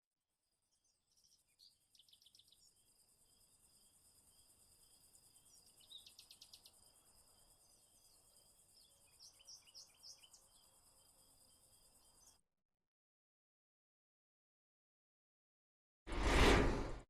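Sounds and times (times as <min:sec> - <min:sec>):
bird chirps: 0:00.7 - 0:02.8, 0:05.3 - 0:12.4
insects trilling: 0:01.9 - 0:12.3.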